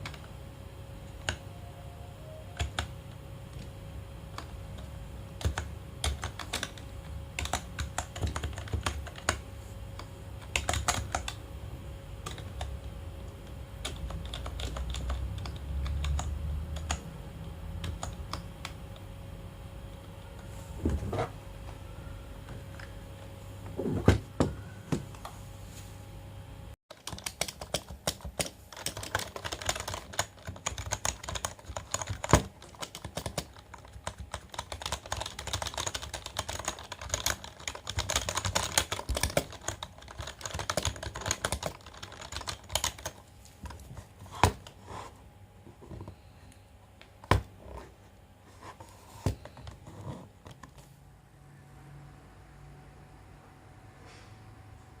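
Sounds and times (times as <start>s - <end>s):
keyboard typing clicks: 2.5s - 2.9s, 26.9s - 43.2s.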